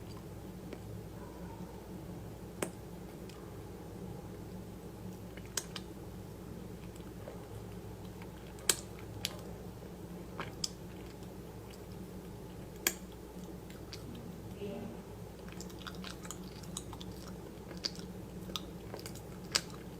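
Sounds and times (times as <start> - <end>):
steady low hum: 0.0 - 19.9
crisp crunches of eating: 10.2 - 14.2, 15.4 - 19.9.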